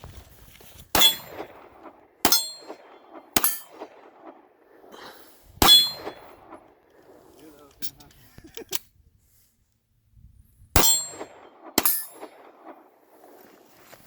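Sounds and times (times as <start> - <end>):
pistol shots with metallic ring: 1.0 - 1.6, 2.2 - 4.0, 5.6 - 6.5, 10.8 - 12.6.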